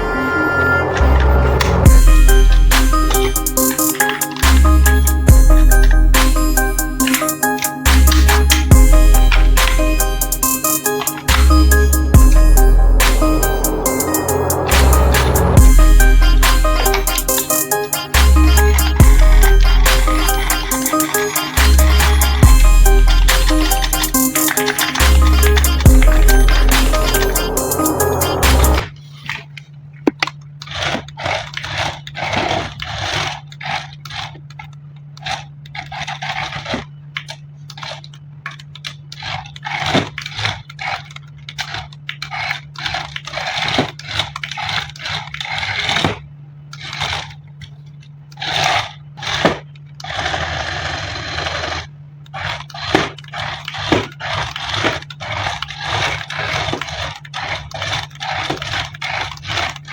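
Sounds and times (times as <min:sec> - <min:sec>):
packaging crinkling and tearing: 0:28.8 - 0:50.5, 0:51.2 - 0:59.9.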